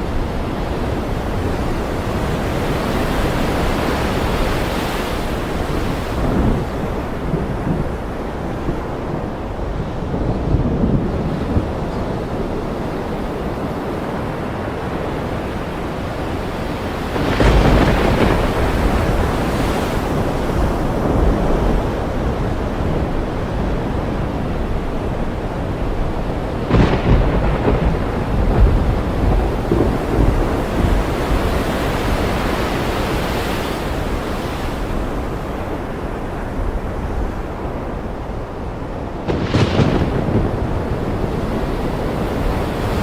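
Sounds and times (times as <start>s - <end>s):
thunder rumbling: 0.0s - 33.2s, 33.9s - 43.0s
ocean surf: 0.0s - 43.0s
rain: 0.0s - 43.0s.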